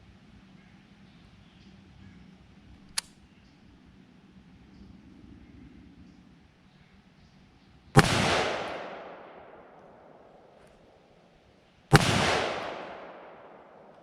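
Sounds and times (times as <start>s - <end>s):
gunshot echo: 8.0s - 10.7s, 11.9s - 14.0s
rifle shots: 8.0s - 10.7s, 11.9s - 14.0s.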